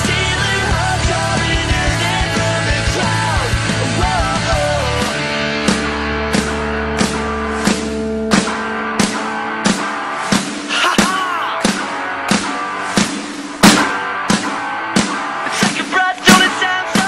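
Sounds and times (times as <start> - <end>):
person singing: 0.0 - 5.3, 10.7 - 11.7, 15.5 - 17.0
drum kit: 0.0 - 17.0
electric guitar: 0.0 - 17.0.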